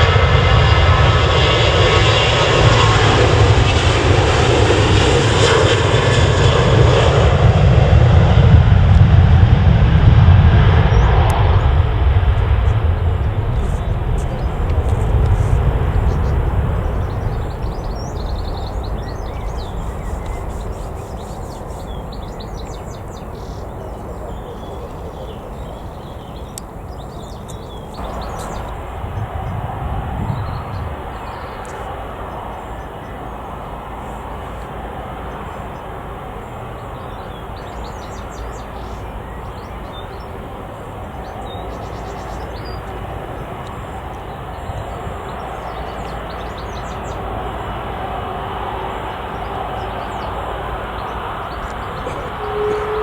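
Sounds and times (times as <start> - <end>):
jet engine rumble: 0.0 - 53.0
small birds chirping: 10.9 - 29.7, 36.8 - 48.0, 48.9 - 53.0.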